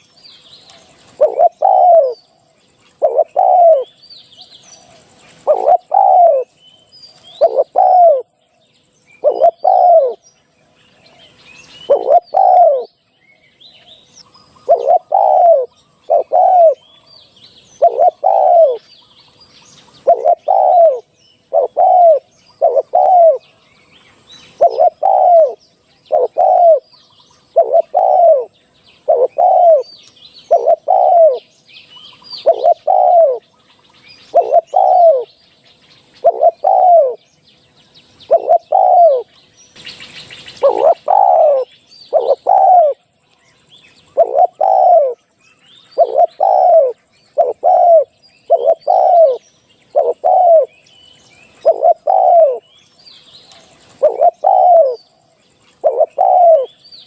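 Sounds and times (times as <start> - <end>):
small birds chirping: 0.0 - 57.0
dove cooing: 1.0 - 2.3, 2.9 - 4.0, 4.8 - 6.6, 7.3 - 8.4, 9.2 - 10.2, 11.8 - 13.0, 14.5 - 17.0, 17.7 - 18.8, 19.9 - 23.6, 24.5 - 31.5, 32.2 - 33.5, 34.2 - 35.4, 36.2 - 37.2, 38.2 - 39.3, 40.3 - 43.1, 44.1 - 45.2, 46.0 - 50.8, 51.5 - 52.7, 53.6 - 55.0, 55.8 - 56.8.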